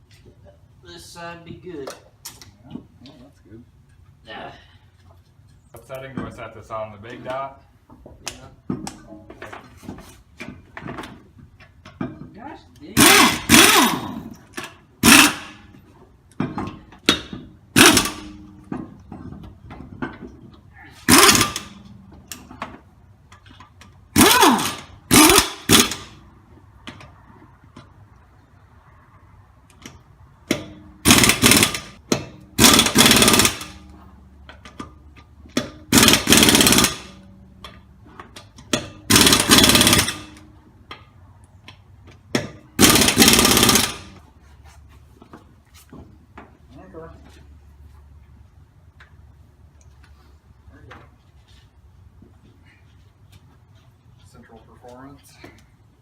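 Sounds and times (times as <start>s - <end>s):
impact wrench hammering: 13.0s - 15.8s, 16.5s - 18.9s, 21.1s - 21.9s, 24.1s - 26.2s, 30.4s - 34.9s, 35.5s - 37.8s, 38.6s - 40.5s, 42.3s - 44.2s.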